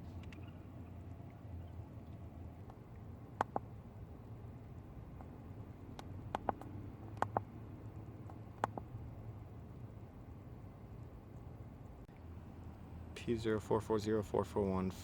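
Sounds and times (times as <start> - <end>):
low steady hum: 0.0 - 15.0
sharp double clicks: 6.0 - 7.5.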